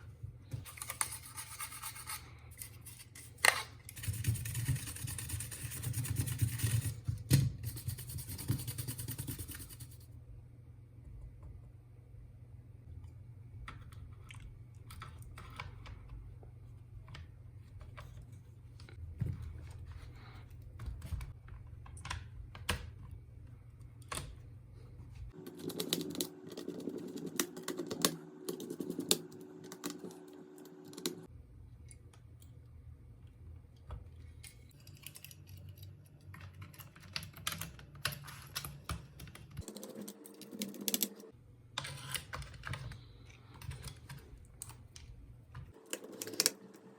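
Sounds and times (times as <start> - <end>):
steady hum: 23.5 - 31.4.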